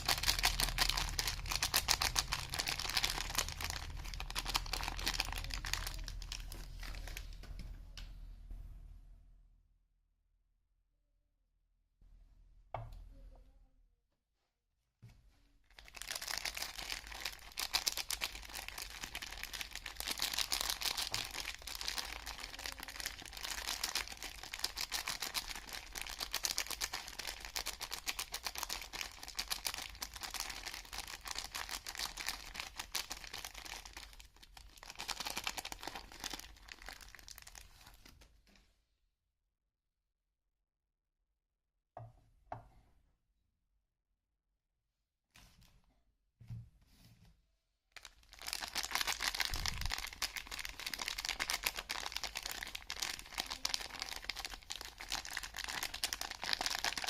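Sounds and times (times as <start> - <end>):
packaging crinkling and tearing: 0.0 - 7.4, 15.7 - 38.2, 48.0 - 57.0.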